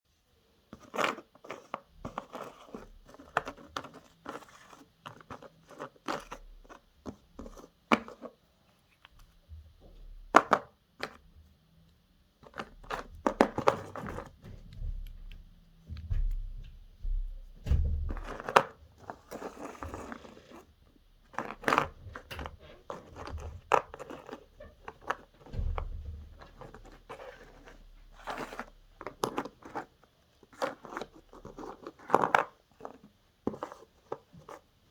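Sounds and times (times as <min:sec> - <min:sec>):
rustling: 0:12.4 - 0:34.9
dull thumps: 0:13.1 - 0:19.1, 0:25.4 - 0:27.1.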